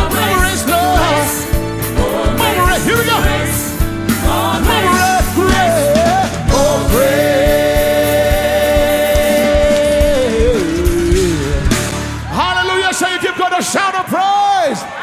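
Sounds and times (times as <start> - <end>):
person singing: 0.0 - 11.8
gospel band with drums: 0.0 - 14.3.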